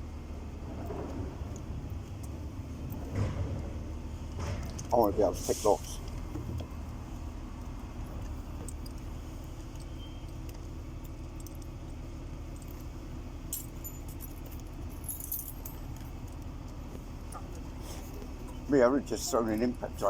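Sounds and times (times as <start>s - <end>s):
lock picks clicking and jingling: 13.5s - 16.5s.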